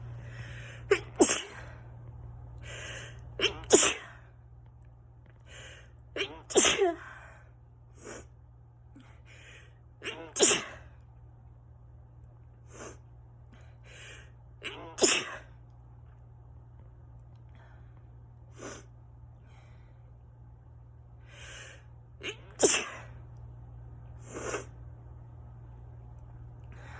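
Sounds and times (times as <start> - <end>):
steady low hum: 0.0 - 26.9
person sneezing: 0.9 - 1.7, 3.4 - 4.2, 6.2 - 7.1, 10.0 - 10.9, 14.6 - 15.5, 22.2 - 23.1.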